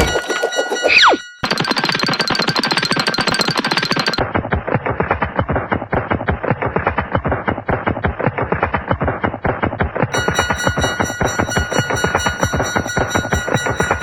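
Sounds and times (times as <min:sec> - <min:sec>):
bright ringing tone: 0:00.0 - 0:04.2, 0:10.2 - 0:14.0
rapid rattle of sharp knocks: 0:01.4 - 0:04.2, 0:10.2 - 0:14.0.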